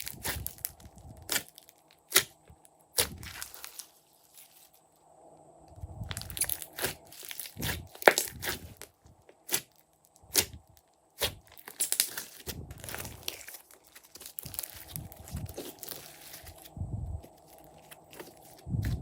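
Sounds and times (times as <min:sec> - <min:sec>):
slime squelching and popping: 0:00.0 - 0:03.8, 0:06.1 - 0:16.7.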